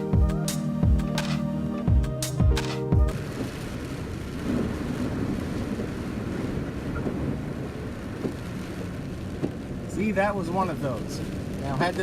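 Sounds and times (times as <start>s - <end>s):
background music: 0.0s - 3.2s
car tyres hissing on wet road: 3.1s - 12.0s.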